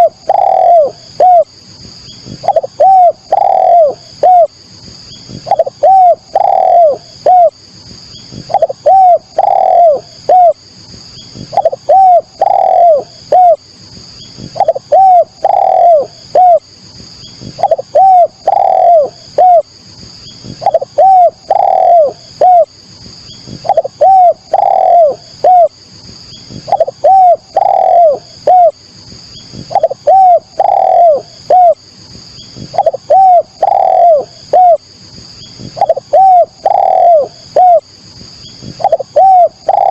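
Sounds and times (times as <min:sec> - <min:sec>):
dove cooing: 0:00.0 - 0:01.5, 0:02.3 - 0:04.6, 0:05.3 - 0:07.6, 0:08.3 - 0:10.6, 0:11.4 - 0:13.6, 0:14.4 - 0:16.7, 0:17.4 - 0:19.7, 0:20.4 - 0:22.7, 0:23.5 - 0:25.8, 0:26.5 - 0:28.8, 0:29.5 - 0:31.8, 0:32.6 - 0:34.8, 0:35.6 - 0:37.9, 0:38.6 - 0:39.9.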